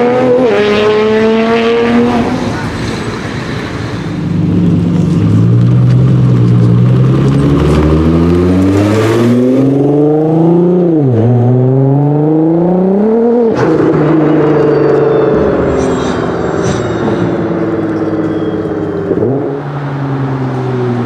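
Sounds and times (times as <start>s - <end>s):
car engine accelerating hard: 0.0s - 2.8s, 4.3s - 15.6s.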